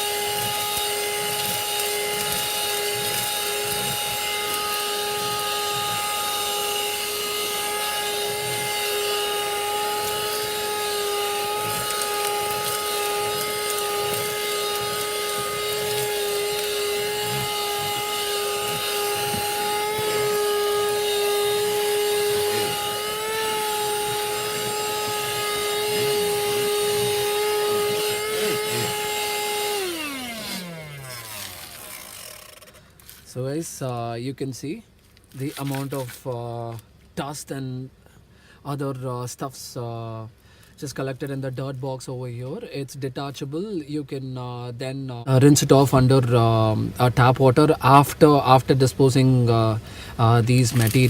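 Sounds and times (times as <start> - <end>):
vacuum motor spinning down: 0.0 - 32.8
handheld vacuum whine: 0.0 - 33.3, 50.1 - 51.0
grit rattling in vacuum nozzle: 0.0 - 33.4, 50.4 - 51.0.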